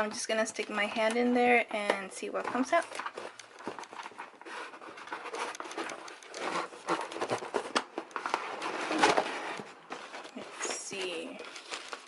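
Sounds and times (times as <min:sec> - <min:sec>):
small clicks and taps: 0:01.8 - 0:04.4, 0:05.0 - 0:08.4
packaging rustling and crinkling: 0:02.3 - 0:12.0.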